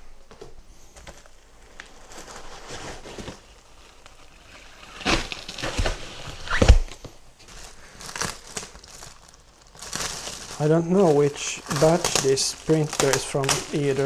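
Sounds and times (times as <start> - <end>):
packaging rustling and scraping: 0.0 - 14.0
knocks in cardboard box: 5.1 - 7.1.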